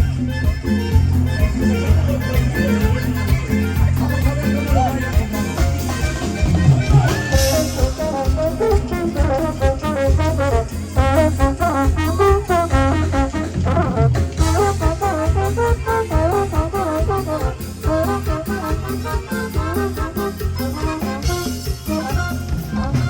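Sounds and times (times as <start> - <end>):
latin dance music: 0.0 - 23.0
steady bass beat: 0.0 - 23.0
trumpets and trombones: 0.0 - 23.0.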